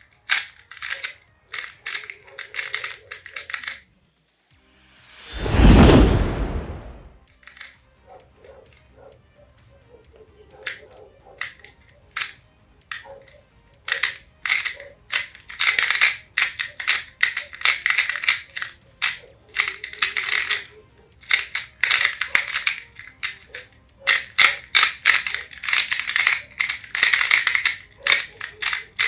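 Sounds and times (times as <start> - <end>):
puzzle cube plastic clicks: 21.4 - 29.0.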